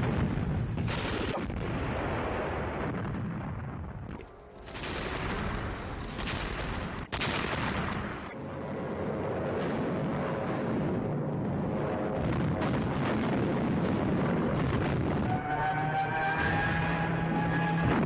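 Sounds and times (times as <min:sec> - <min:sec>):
artillery fire: 0:00.0 - 0:08.4, 0:09.3 - 0:15.3
gunfire: 0:04.2 - 0:08.4.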